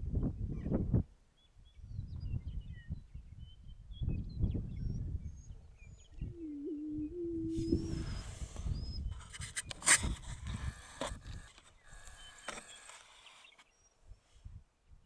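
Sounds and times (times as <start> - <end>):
faint high bird chirps: 1.7 - 9.1.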